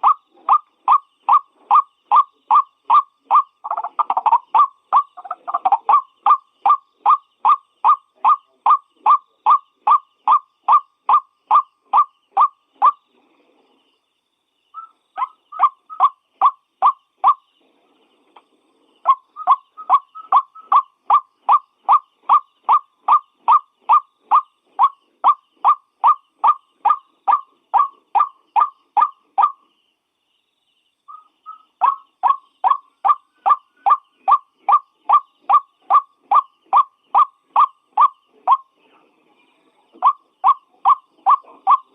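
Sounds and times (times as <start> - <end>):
bird calling repeated note: 19.0 - 29.6, 39.9 - 41.9.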